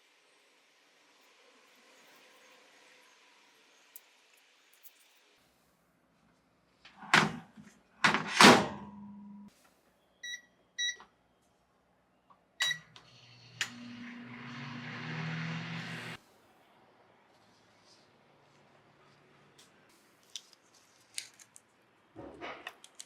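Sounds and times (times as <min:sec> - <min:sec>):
microwave door thudding shut: 0:08.1 - 0:09.0
keypad beeps: 0:10.2 - 0:11.0
microwave running hum: 0:12.6 - 0:16.2.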